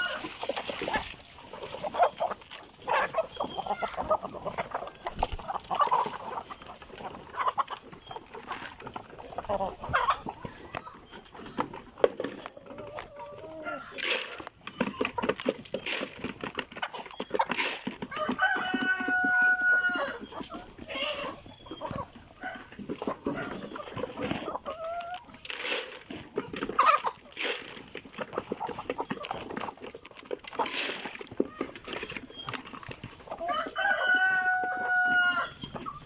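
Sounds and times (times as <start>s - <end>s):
chickens clucking: 0.0s - 36.0s
rooster crowing: 18.1s - 20.2s, 33.5s - 35.6s.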